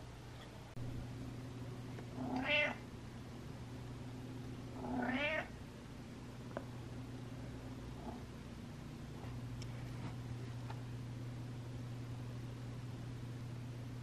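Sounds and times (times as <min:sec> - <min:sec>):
steady low hum: 0:00.0 - 0:14.0
cat meowing: 0:02.2 - 0:02.8, 0:04.8 - 0:05.5.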